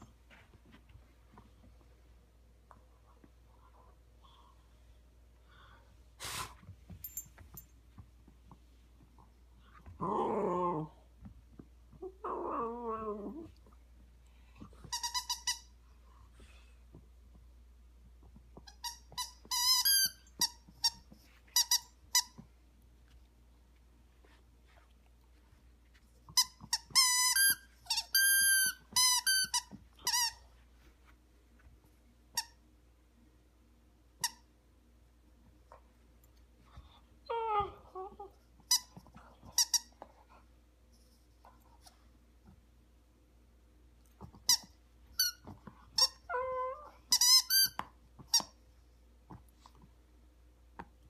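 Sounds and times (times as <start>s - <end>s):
puppy growling: 9.9s - 11.0s, 12.0s - 13.6s
squeaky toy squeaks: 14.9s - 15.7s, 18.7s - 21.0s, 26.4s - 30.4s, 44.5s - 46.3s, 47.1s - 48.5s.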